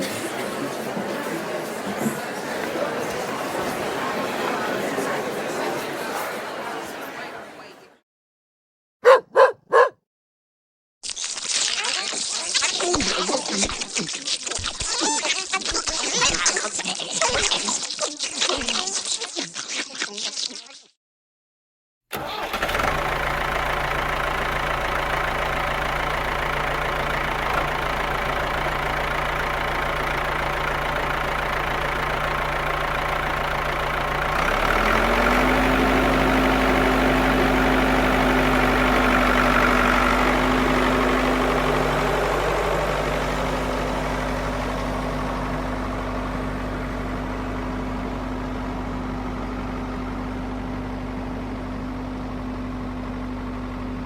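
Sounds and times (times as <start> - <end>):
engine starting and running: 22.1 - 54.0.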